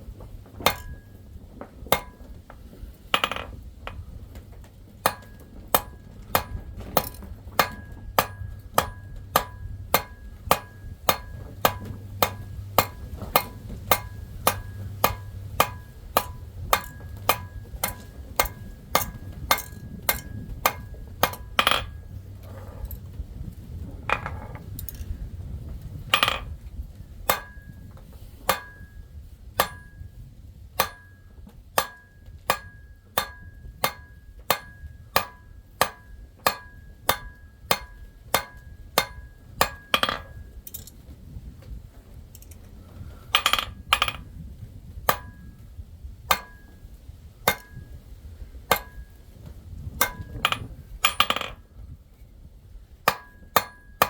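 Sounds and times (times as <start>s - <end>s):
hammer striking anvil: 0.6s - 1.1s, 1.9s - 2.3s, 3.2s - 4.0s, 5.0s - 22.0s, 26.1s - 26.5s, 27.3s - 27.8s, 28.5s - 29.0s, 29.6s - 30.1s, 30.8s - 31.2s, 31.8s - 40.4s, 45.1s - 45.4s, 46.3s - 46.8s, 47.5s - 47.8s, 48.7s - 49.0s, 50.0s - 51.6s, 53.1s - 54.0s.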